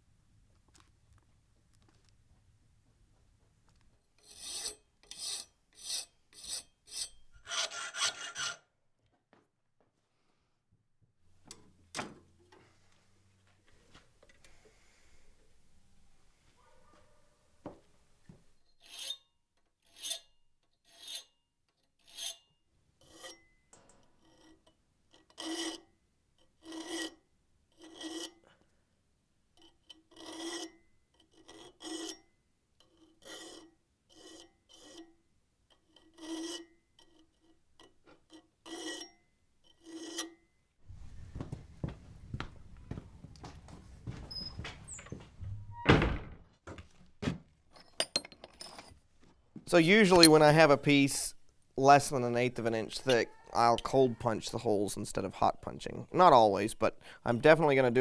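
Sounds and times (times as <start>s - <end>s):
file rasping on iron: 4.2s - 8.7s, 19.8s - 21.3s, 23.0s - 23.4s, 30.1s - 32.2s, 49.9s - 50.8s.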